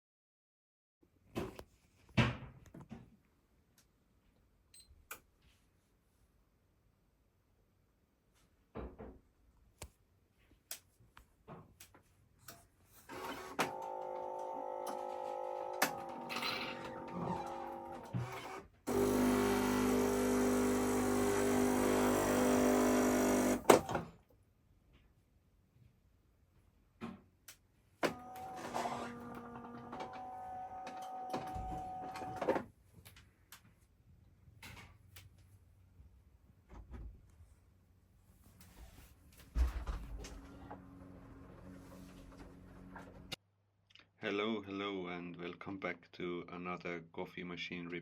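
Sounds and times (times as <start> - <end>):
coffee machine motor hum: 13.2 - 24.0.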